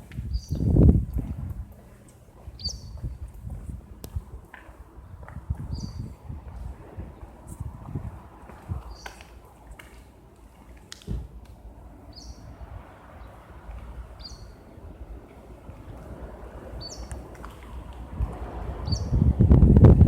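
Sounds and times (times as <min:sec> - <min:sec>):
bird chirping: 0:00.3 - 0:00.7, 0:02.6 - 0:03.1, 0:08.9 - 0:09.3, 0:12.1 - 0:12.5, 0:14.2 - 0:14.6, 0:16.8 - 0:17.2.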